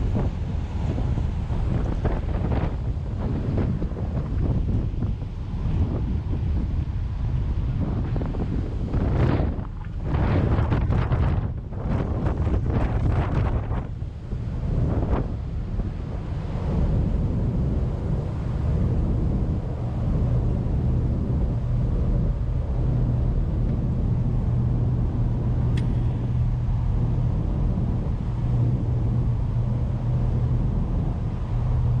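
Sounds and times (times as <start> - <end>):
low engine drone: 0.0 - 32.0
wind noise: 0.0 - 32.0
sharp click: 25.7 - 26.1.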